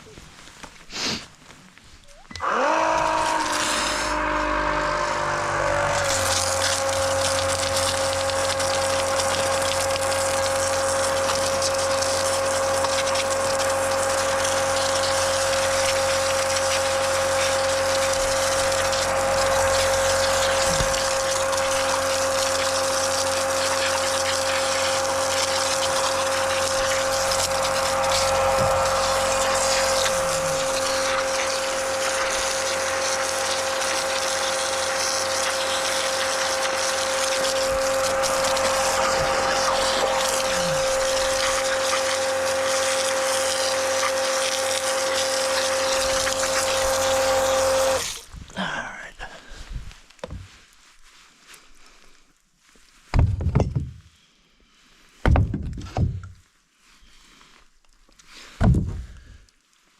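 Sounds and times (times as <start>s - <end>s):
rushing hiss: 0.9s - 1.3s
machine motor whine: 2.3s - 48.1s.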